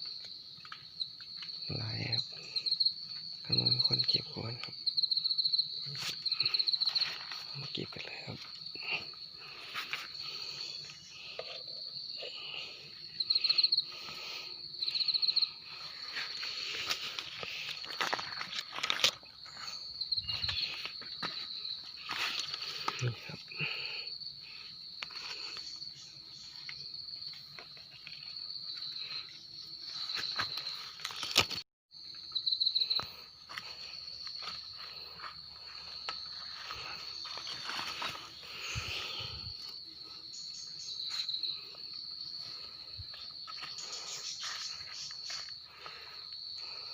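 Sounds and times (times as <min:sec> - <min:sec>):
insect rapid trills: 0:00.0 - 0:46.9
insects droning: 0:00.0 - 0:46.9
rustles and snaps: 0:30.5 - 0:31.6.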